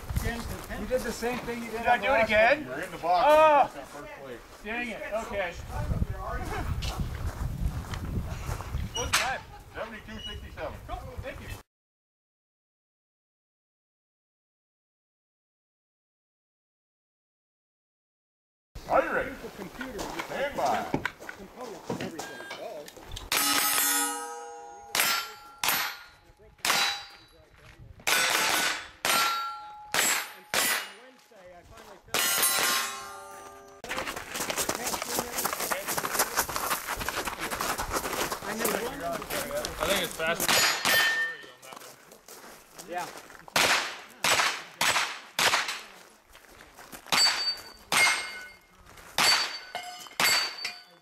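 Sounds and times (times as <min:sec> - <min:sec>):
steel plate ringing: 0:23.3 - 0:27.3, 0:28.1 - 0:31.1, 0:32.2 - 0:33.8, 0:40.6 - 0:41.5, 0:49.2 - 0:51.0
gunshots: 0:28.0 - 0:31.0, 0:40.4 - 0:41.3, 0:43.6 - 0:45.9, 0:49.2 - 0:50.7.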